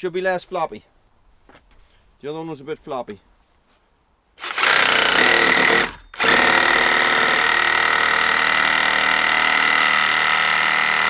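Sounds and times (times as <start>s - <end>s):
reciprocating saw cutting wood: 4.4s - 11.0s.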